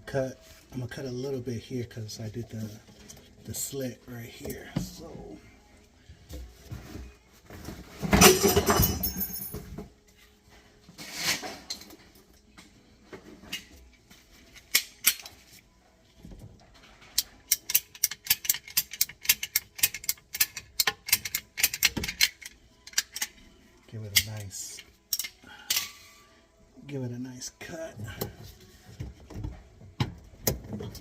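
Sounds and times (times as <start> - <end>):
hand tools clattering: 8.0 - 9.8.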